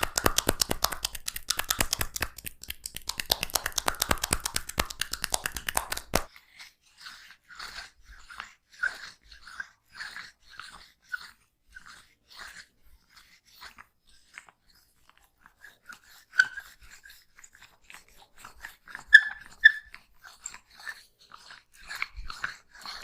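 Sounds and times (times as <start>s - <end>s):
wet squelches of oiled hands: 0.0s - 6.3s.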